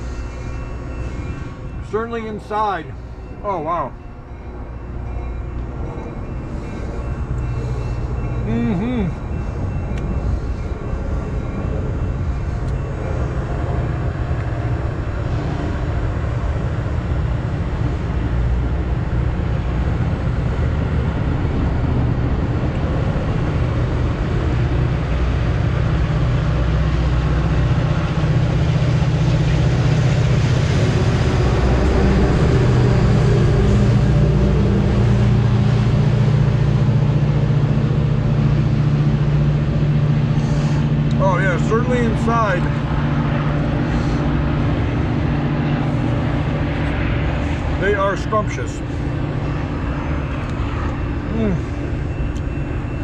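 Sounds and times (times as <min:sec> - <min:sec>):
train engine humming: 0:00.0 - 0:53.0.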